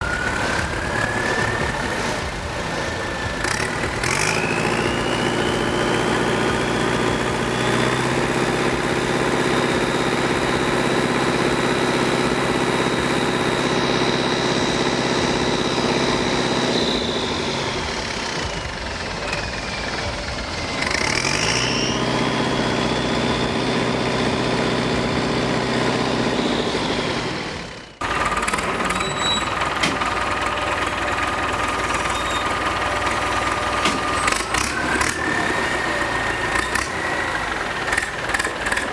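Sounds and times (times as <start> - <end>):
tractor engine at high revs: 0.0 - 38.9
turbo whistle: 3.4 - 6.1, 16.6 - 17.8, 21.4 - 22.1.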